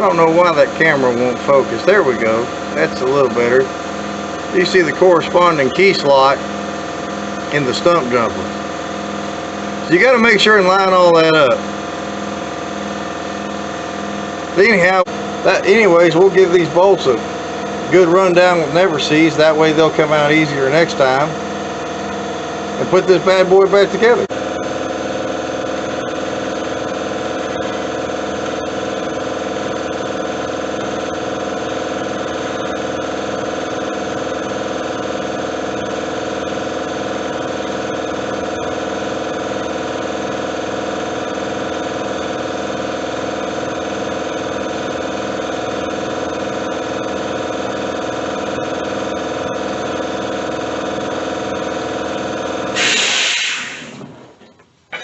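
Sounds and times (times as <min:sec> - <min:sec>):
engine idling: 0:00.0 - 0:55.0
short loud noise: 0:52.8 - 0:54.4.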